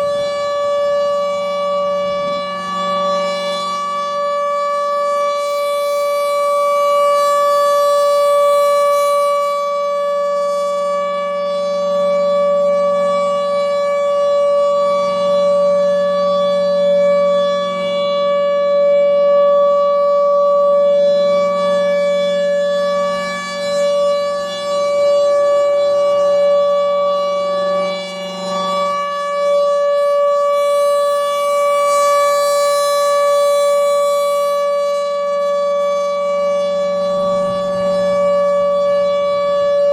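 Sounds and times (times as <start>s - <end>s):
outdoor warning siren steady tone: 0.0s - 39.9s.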